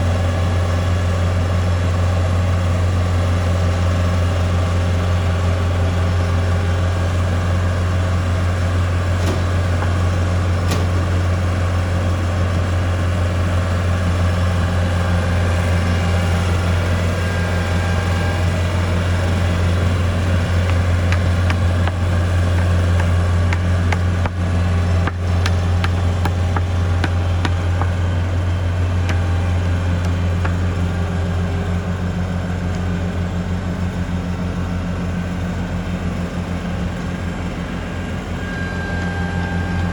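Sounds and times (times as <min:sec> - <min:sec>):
heavy engine humming: 0:00.0 - 0:39.9
sharp clicks and knocks: 0:25.0 - 0:28.0.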